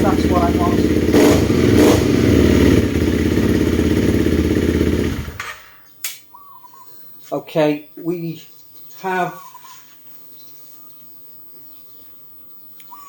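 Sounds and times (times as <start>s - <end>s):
motorcycle engine running: 0.0s - 5.8s
sharp click: 5.4s - 6.3s.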